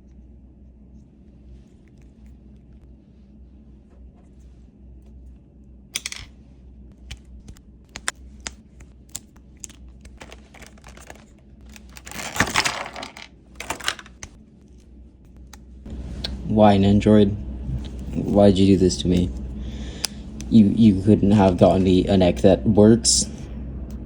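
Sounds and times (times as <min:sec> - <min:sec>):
plastic parts rustling: 0:07.0 - 0:14.4.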